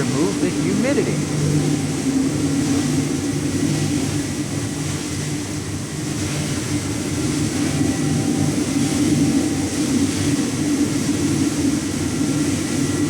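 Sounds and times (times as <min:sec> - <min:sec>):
constant hiss: 0:00.0 - 0:02.5
higher machinery hum: 0:00.0 - 0:13.0
low machinery hum: 0:00.0 - 0:13.0.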